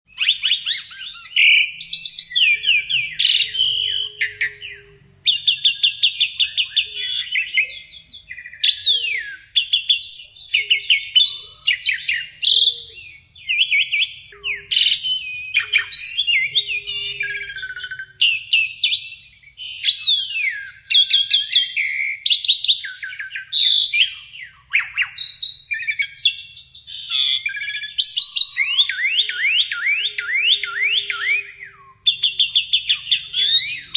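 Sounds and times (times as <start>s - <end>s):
starling chattering song: 0.1s - 22.2s, 27.0s - 33.9s.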